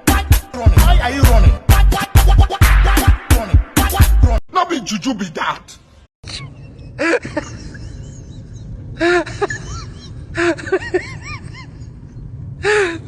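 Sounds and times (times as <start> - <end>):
low background hum: 4.6 - 13.0.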